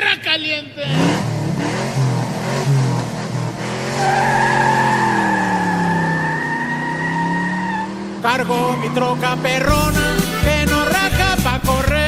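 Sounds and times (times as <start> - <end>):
vehicle engine running: 0.8 - 12.0
tire squeal: 2.0 - 9.5.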